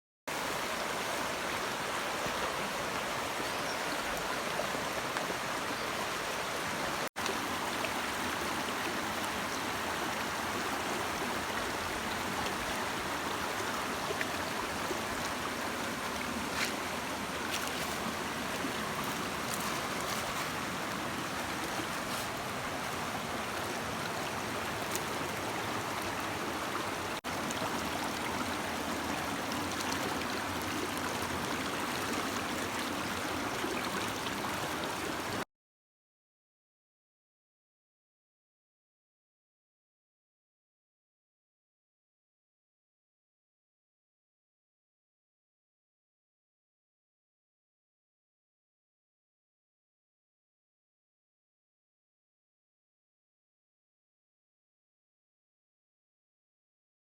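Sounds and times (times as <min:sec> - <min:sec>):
brook babbling over stones: 0:00.3 - 0:35.4
small water splashes: 0:16.0 - 0:22.8.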